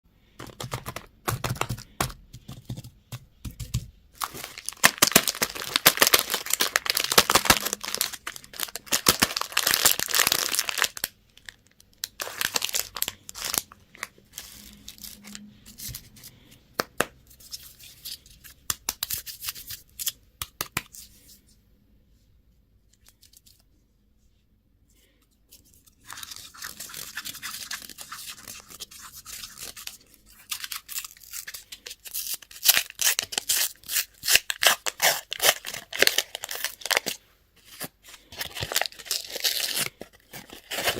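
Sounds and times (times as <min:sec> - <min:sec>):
plastic wrappers crinkling: 0:04.2 - 0:15.5, 0:26.0 - 0:40.9.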